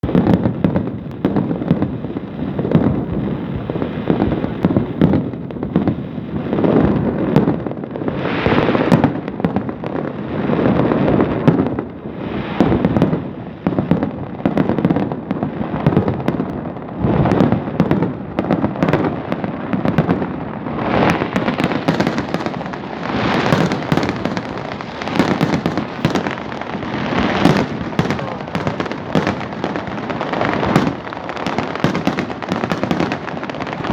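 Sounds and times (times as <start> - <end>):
fireworks bangs and crackling: 0.0 - 33.9.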